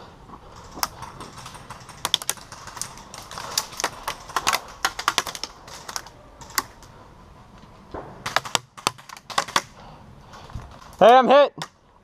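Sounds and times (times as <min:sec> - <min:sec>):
airsoft guns firing: 0:00.6 - 0:06.8, 0:07.9 - 0:09.8.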